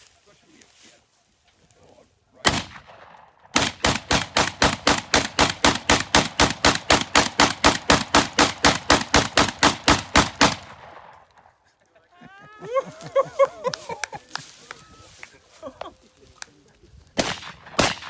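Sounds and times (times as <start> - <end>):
gunshots: 2.4 - 11.5, 17.2 - 18.0.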